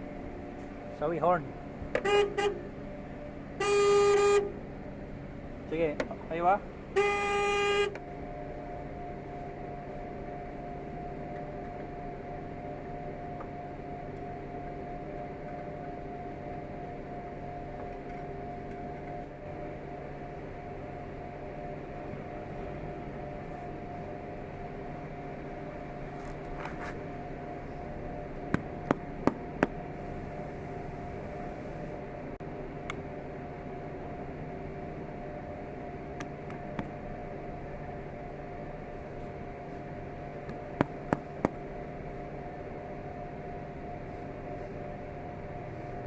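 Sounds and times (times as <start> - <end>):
mechanical hum: 0.0 - 46.0.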